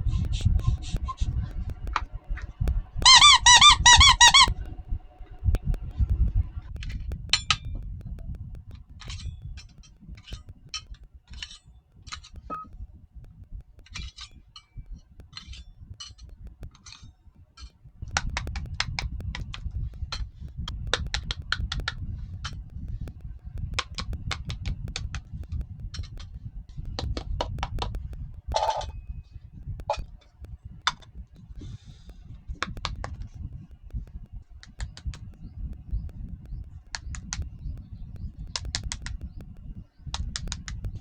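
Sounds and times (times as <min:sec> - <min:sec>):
low handling rumble: 0:00.0 - 0:11.2
toy pieces clicking together: 0:00.1 - 0:04.6, 0:13.3 - 0:29.0, 0:36.0 - 0:41.0.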